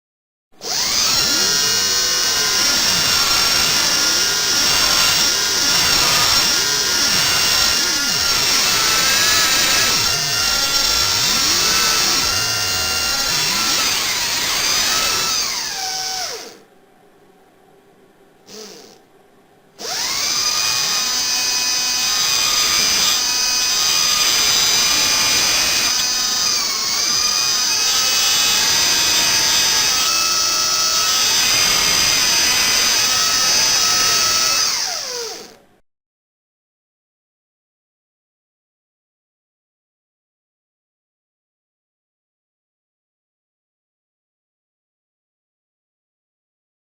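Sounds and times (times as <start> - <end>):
dental drill whining: 0.6 - 16.6, 18.5 - 19.0, 19.8 - 35.6.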